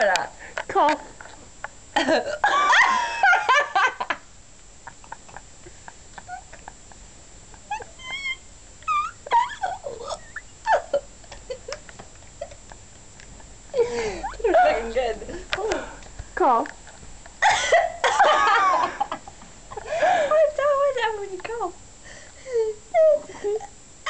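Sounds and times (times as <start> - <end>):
pet whining and yelping: 7.6 - 11.0.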